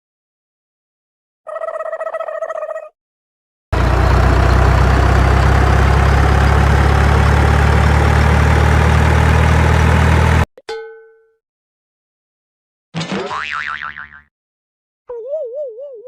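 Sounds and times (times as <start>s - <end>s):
diesel engine idling: 3.8s - 10.5s
boing sound effect: 13.0s - 14.3s.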